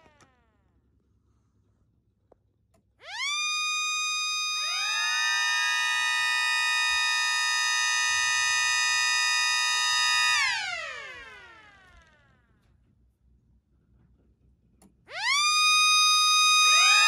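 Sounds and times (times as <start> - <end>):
mini sirens spinning up: 0.0 - 0.7, 3.0 - 12.5, 15.1 - 17.0.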